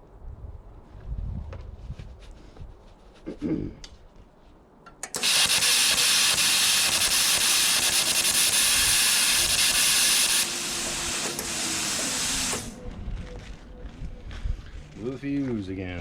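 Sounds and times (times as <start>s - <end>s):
plasma cutter arc hissing: 5.1s - 12.8s.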